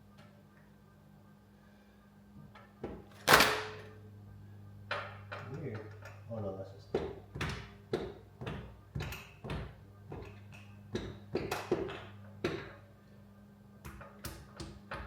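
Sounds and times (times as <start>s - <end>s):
steady low hum: 0.0s - 15.0s
hand tools knocking on metal: 6.9s - 12.8s.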